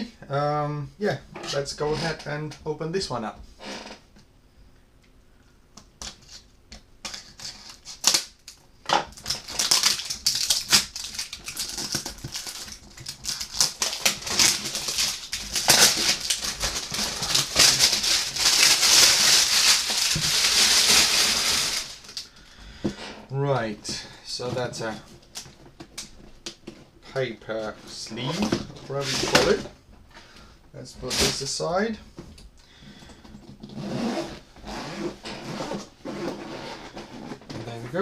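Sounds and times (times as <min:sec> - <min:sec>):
paper and card rustling: 0:09.2 - 0:22.2.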